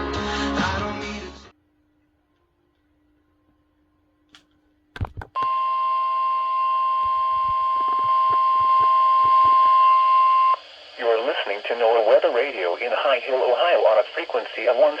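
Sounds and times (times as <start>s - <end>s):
steady alarm tone: 5.4s - 11.0s.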